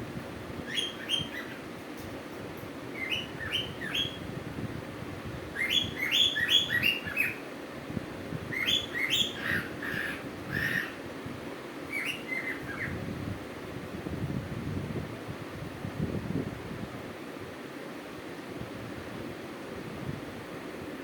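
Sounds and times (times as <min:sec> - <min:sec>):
cuckoo calling: 0:00.7 - 0:01.6, 0:03.0 - 0:04.2, 0:05.6 - 0:07.4, 0:08.5 - 0:11.0, 0:11.9 - 0:13.0.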